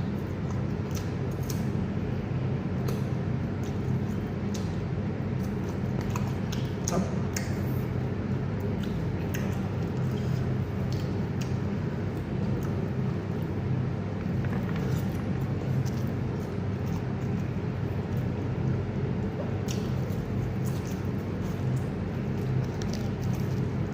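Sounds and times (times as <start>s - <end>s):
low background hum: 0.0s - 23.9s
person chewing: 14.2s - 23.9s.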